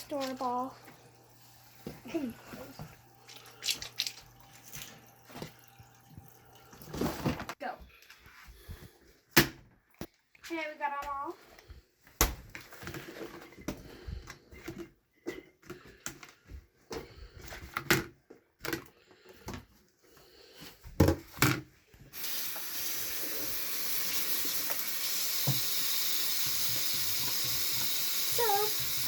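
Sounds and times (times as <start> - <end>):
water running into sink: 0.0 - 7.4, 22.1 - 29.0.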